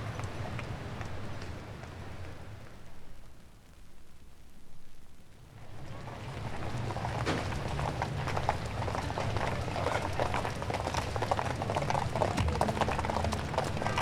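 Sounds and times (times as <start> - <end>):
low steady rumble: 2.5 - 14.0
crowd murmur: 6.3 - 14.0.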